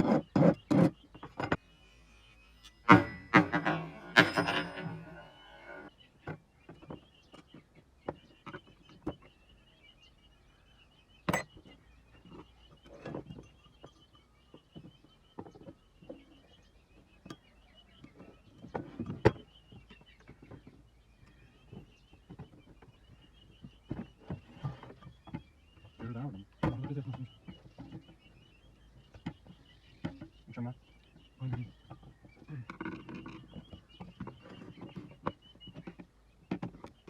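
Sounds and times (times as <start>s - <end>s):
tools clicking and knocking: 2.6s - 5.2s.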